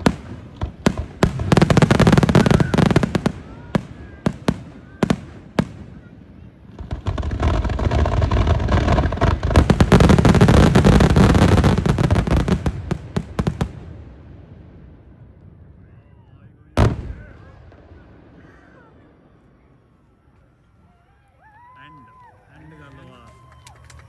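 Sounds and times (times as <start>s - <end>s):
crackling firework bursts: 0.0s - 16.0s
firework bangs: 0.0s - 16.0s, 16.7s - 20.1s.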